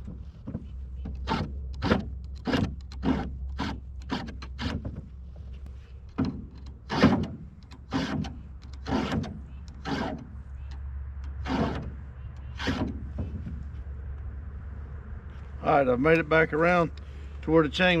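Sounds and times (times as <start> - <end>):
file rasping on chainsaw chain: 1.1 - 4.8, 6.8 - 10.3, 11.3 - 13.0.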